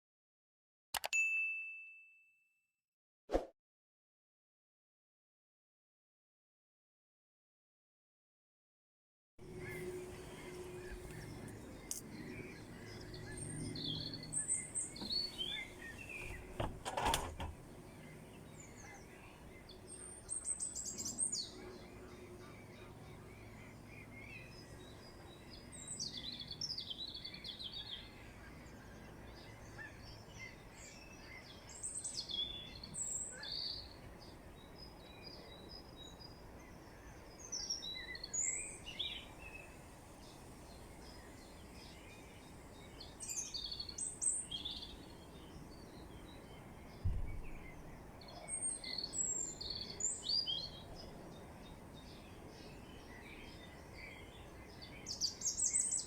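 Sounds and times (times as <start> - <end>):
songbirds singing and chirping: 9.4 - 56.0
low thump: 47.0 - 47.6.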